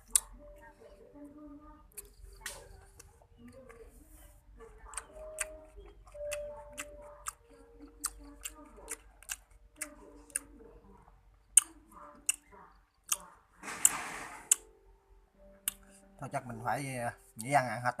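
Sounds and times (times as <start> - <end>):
person chewing with lip smacks: 4.9 - 10.5.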